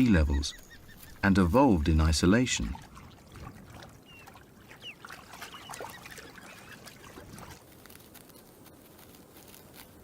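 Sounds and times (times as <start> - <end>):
high bird chirps: 0.2 - 1.3, 4.0 - 7.2
water trickling: 0.7 - 7.6.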